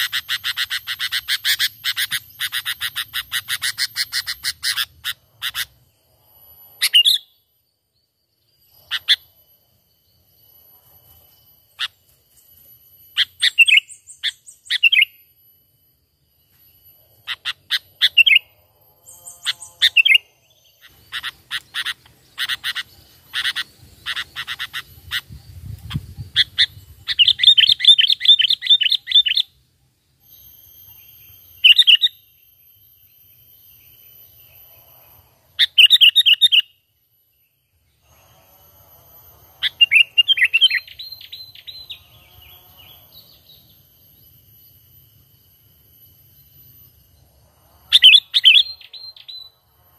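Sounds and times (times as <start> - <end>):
bird rattling trill: 0.0 - 5.8, 20.8 - 29.5
bird calling: 0.0 - 5.9, 8.9 - 9.3, 17.2 - 18.5, 19.1 - 29.5, 39.6 - 43.7, 47.9 - 49.6.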